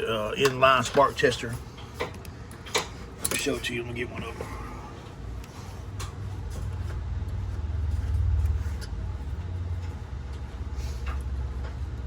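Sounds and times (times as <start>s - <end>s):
pulsing mechanical hum: 0.0s - 12.0s.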